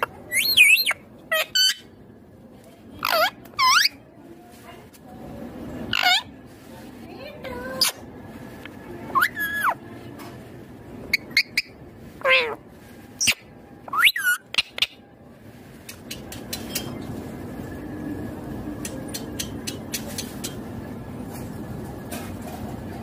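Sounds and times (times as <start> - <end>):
parakeet squawking and calling: 0.0 - 2.0, 3.0 - 4.1, 5.9 - 6.4, 9.1 - 9.8, 11.0 - 15.0.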